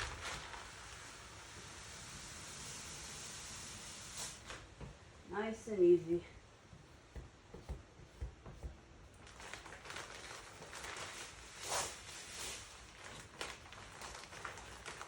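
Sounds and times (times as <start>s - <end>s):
scraping and rustling of vinyl: 0.0s - 1.8s, 6.6s - 15.0s.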